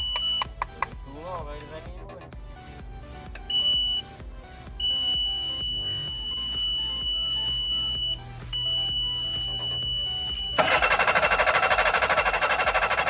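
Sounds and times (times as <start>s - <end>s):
steady high warning beep: 0.0s - 0.7s, 3.4s - 10.8s
engine starter cranking: 10.5s - 13.0s.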